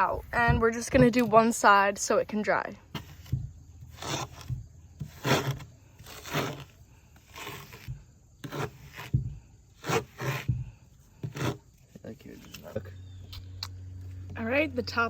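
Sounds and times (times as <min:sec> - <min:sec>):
scraping and rubbing strokes: 0:02.9 - 0:12.9.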